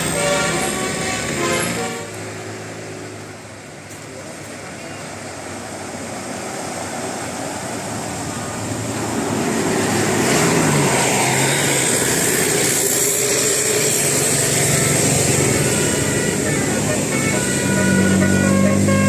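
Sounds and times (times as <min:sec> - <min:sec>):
bus engine running: 0:00.0 - 0:19.0.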